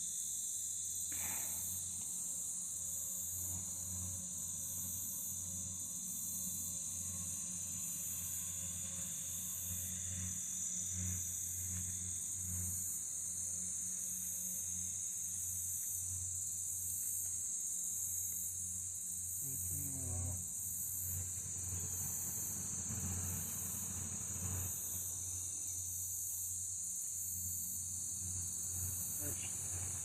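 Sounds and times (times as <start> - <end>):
insects chirping chorus: 0.0 - 30.0.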